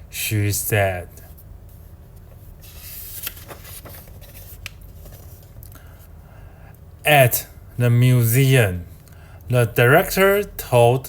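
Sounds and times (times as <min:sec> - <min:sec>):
paper rustling: 0:01.2 - 0:05.7.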